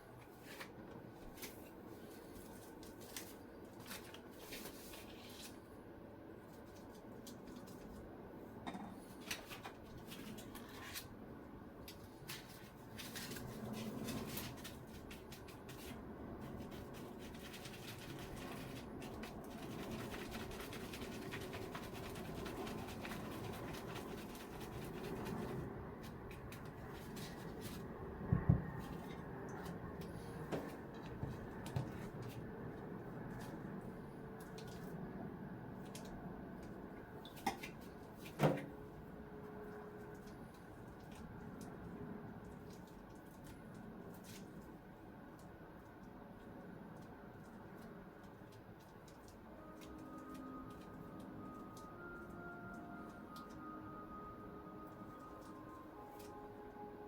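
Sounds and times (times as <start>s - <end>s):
soft rustling and scraping: 12.0s - 20.0s.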